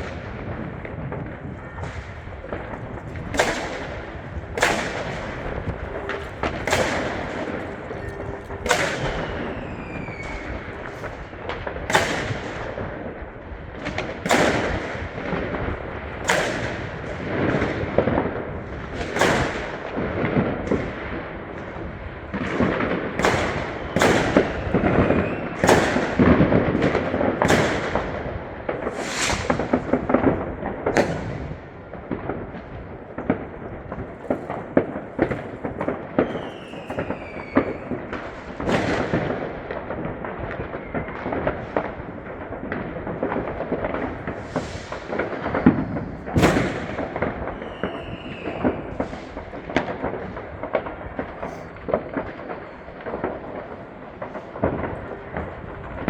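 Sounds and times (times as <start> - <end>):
falling firework whistle: 0.0 - 12.7, 24.1 - 26.0, 28.9 - 29.7, 35.2 - 39.1, 40.6 - 41.8, 44.3 - 49.5
firecrackers crackling: 0.0 - 56.0
fireworks bangs: 0.0 - 56.0.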